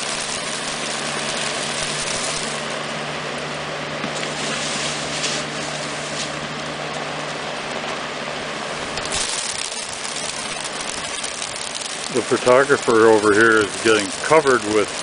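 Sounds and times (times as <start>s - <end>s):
machine low hum: 0.0s - 15.0s.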